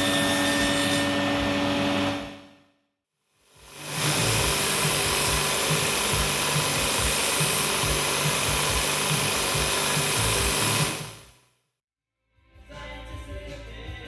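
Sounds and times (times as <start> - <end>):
power tool working timber: 0.0 - 2.6, 3.6 - 11.3.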